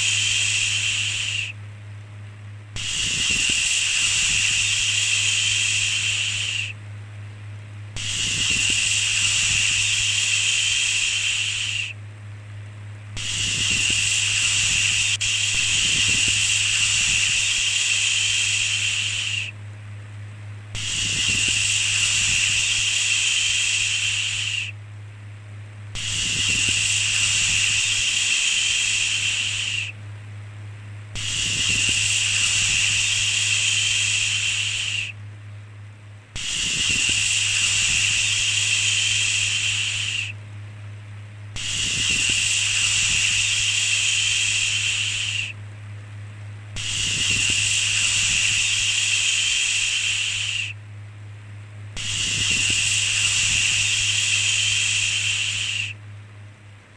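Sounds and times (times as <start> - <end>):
long shushing sounds: 0.0 - 1.6, 2.8 - 6.8, 8.0 - 12.0, 13.2 - 19.6, 20.8 - 24.8, 26.0 - 30.0, 31.2 - 35.2, 36.4 - 40.4, 41.6 - 45.6, 46.8 - 50.8, 52.0 - 56.0
steady low hum: 0.0 - 56.9.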